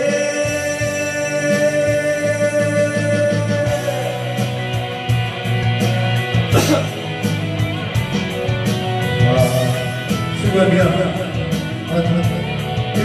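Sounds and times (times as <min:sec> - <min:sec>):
guitar over steady beat: 0:00.0 - 0:13.0
instrumental rock ballad: 0:00.0 - 0:13.0
person coughing: 0:06.5 - 0:07.0.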